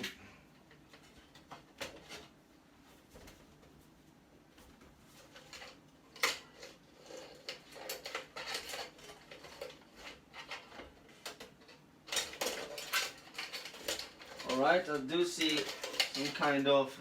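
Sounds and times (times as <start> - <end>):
small metal parts clinking: 5.5 - 16.6.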